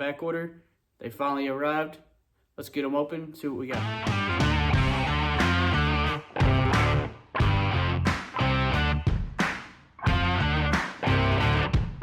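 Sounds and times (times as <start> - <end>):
rock music with electric guitar: 3.8 - 12.0.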